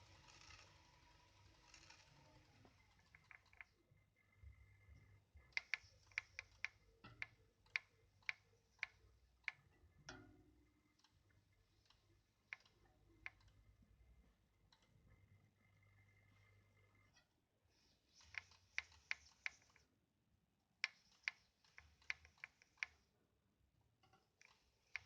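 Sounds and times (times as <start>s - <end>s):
faint hum: 0.0s - 20.0s.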